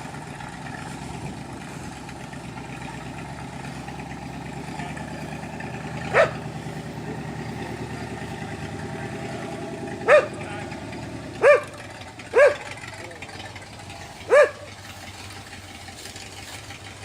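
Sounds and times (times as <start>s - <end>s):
pickup engine idling: 0.0s - 17.0s
dog barking: 6.1s - 6.5s, 10.0s - 10.5s, 11.4s - 12.8s, 14.3s - 14.7s.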